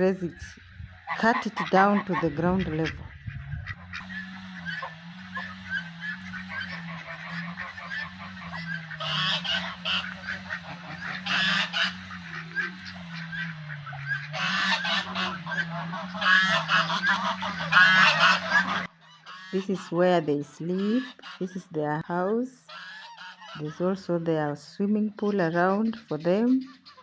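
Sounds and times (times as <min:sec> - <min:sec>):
steady low hum: 0:00.0 - 0:18.9
geese honking: 0:00.0 - 0:27.0.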